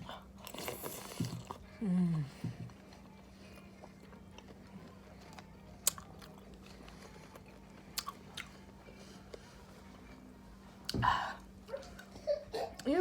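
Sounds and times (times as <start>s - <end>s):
chewing food: 0.1s - 9.6s.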